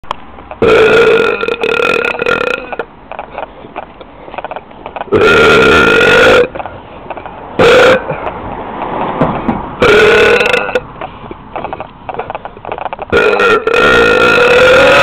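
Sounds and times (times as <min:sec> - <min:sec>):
long loud burps: 0:00.6 - 0:02.9, 0:05.1 - 0:06.6, 0:07.6 - 0:08.3, 0:09.8 - 0:10.8, 0:13.1 - 0:15.0.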